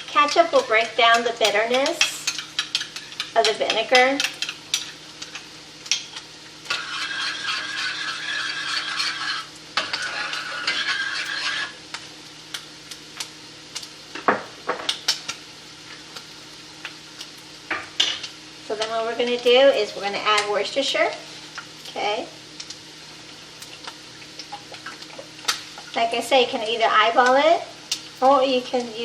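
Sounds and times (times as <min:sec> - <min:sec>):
utensils clinking on cookware: 0:00.2 - 0:05.0
utensil scraping in saucepan: 0:00.2 - 0:11.9.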